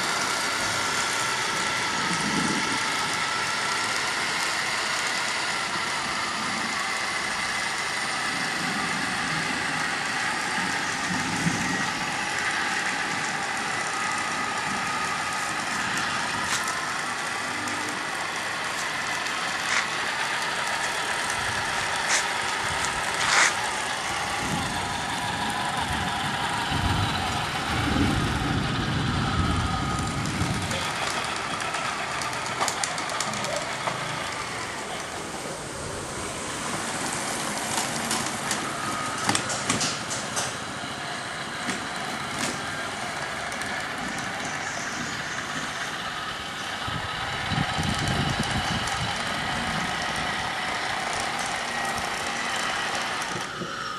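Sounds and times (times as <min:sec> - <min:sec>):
toy tank engine whine: 0:00.0 - 0:53.9
low rumbling: 0:08.3 - 0:32.5.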